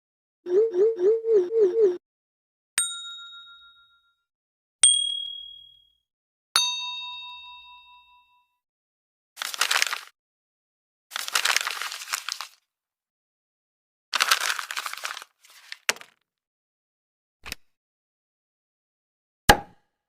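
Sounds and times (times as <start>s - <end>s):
crackling crunching bursts: 9.4s - 10.1s, 11.1s - 12.6s, 14.2s - 15.8s.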